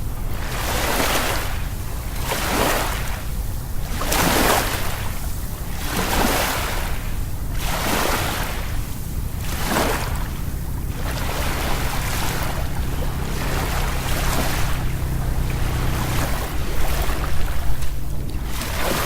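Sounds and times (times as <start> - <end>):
sea waves washing in and out: 0.0 - 19.0
steady low rumble: 0.0 - 19.0.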